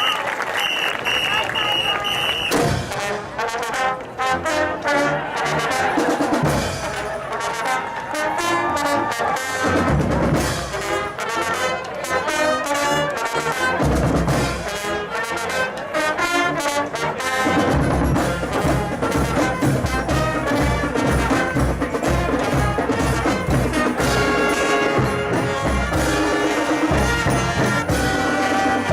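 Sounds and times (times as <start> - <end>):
marching brass band playing: 0.0 - 28.9
steady drum beat: 17.6 - 28.9.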